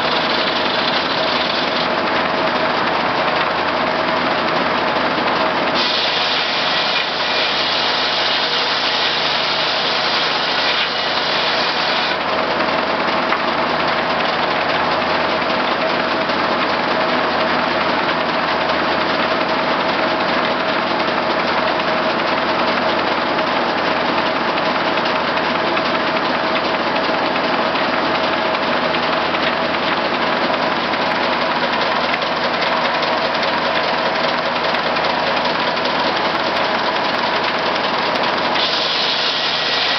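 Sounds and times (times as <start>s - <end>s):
circular sawmill running: 0.0s - 39.9s.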